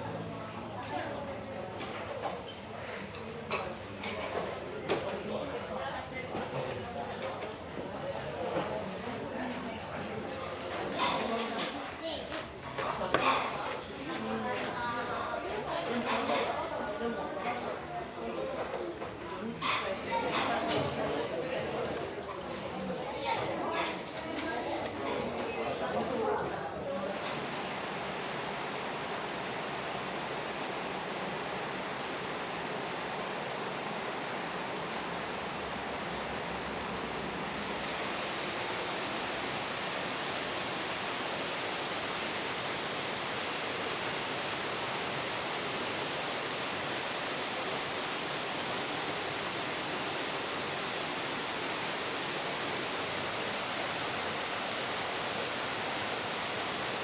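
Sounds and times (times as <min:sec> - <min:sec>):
waterfall rushing: 0:27.2 - 0:57.0.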